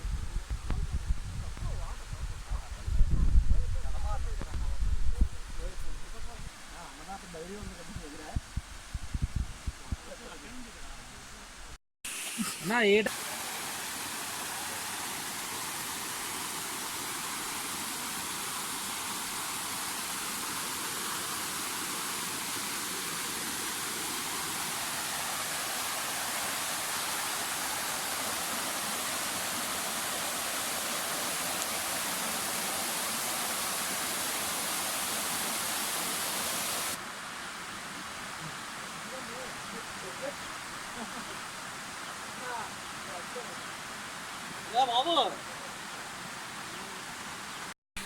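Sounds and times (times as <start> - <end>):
waterfall rushing: 12.1 - 47.5.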